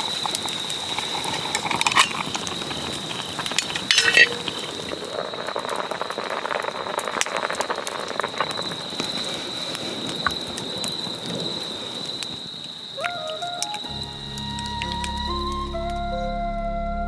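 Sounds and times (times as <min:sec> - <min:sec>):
campfire crackling and sizzling: 0:00.0 - 0:17.0
soft music: 0:13.0 - 0:17.0.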